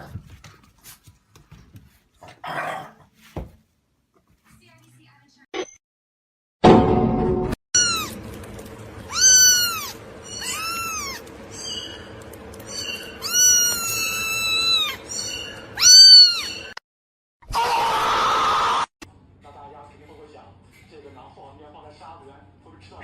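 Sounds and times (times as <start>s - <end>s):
cat meowing: 7.8s - 8.2s, 9.1s - 11.8s, 13.2s - 15.0s, 15.8s - 16.8s.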